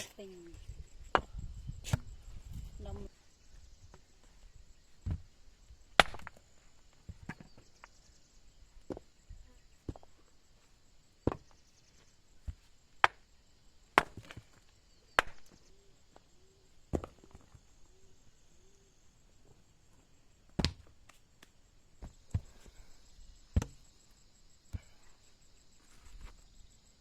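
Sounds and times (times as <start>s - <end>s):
wood chopping blows: 6.0s - 6.4s, 15.2s - 15.6s.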